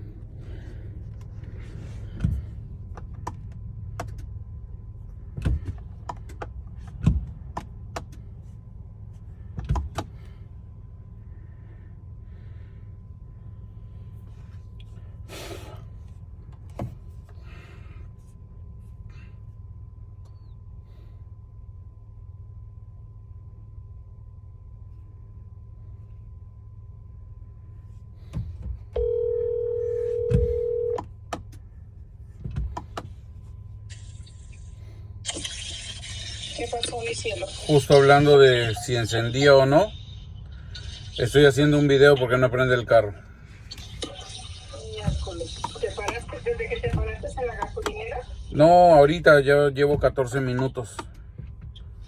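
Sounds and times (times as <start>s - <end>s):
vehicle cabin hum: 0.0s - 52.0s.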